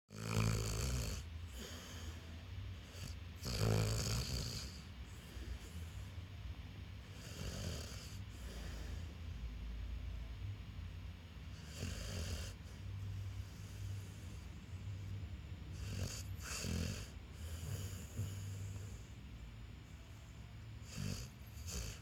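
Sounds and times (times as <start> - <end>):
loud rasping snores: 0.1 - 2.0, 2.8 - 4.9, 7.1 - 8.7, 11.6 - 12.7, 15.7 - 18.9, 20.8 - 22.0
soft snoring breaths: 0.1 - 6.4, 7.0 - 9.4, 11.4 - 22.0.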